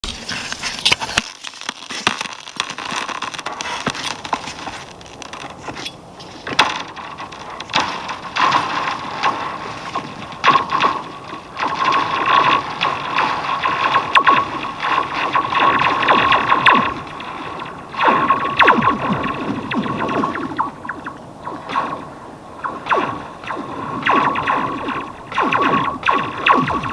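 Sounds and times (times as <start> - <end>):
ice pinging and cracking: 0.0 - 19.6.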